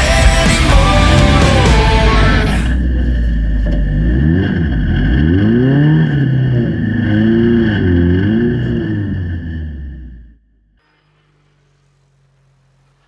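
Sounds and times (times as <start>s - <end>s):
steady high whine: 0.0s - 5.0s
engine revving: 0.0s - 11.9s.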